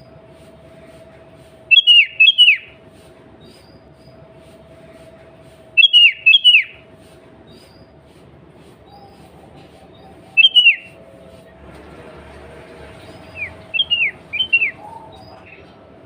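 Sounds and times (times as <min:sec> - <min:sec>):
steady low hum: 0:00.0 - 0:16.0
bulbul whistled calls: 0:01.7 - 0:02.8, 0:05.8 - 0:06.9, 0:08.8 - 0:11.0, 0:13.0 - 0:15.8.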